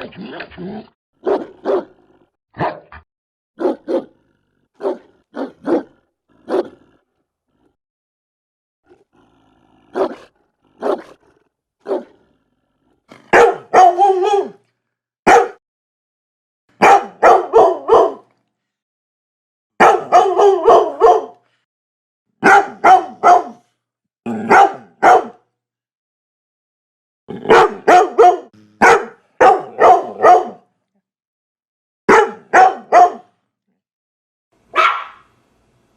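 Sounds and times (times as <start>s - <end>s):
dog barking: 1.2s - 2.0s, 2.6s - 3.0s, 3.6s - 4.2s, 4.8s - 6.9s, 9.9s - 11.2s, 11.8s - 12.2s, 13.1s - 14.6s, 15.2s - 15.6s, 16.8s - 18.3s, 19.8s - 21.4s, 22.4s - 23.7s, 24.3s - 25.4s, 27.4s - 30.7s, 32.1s - 33.3s, 34.7s - 35.3s.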